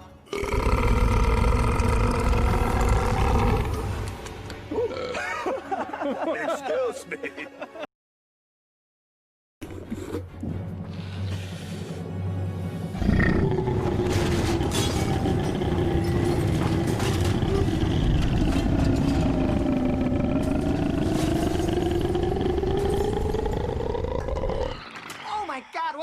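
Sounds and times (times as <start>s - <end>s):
man belching: 0.3s - 5.3s, 13.0s - 24.8s.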